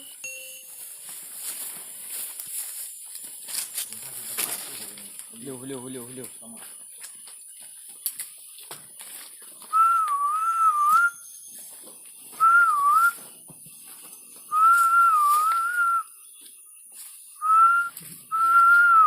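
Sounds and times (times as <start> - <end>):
person whistling a tune: 9.7 - 11.5, 12.4 - 13.2, 14.5 - 16.2, 17.4 - 19.0.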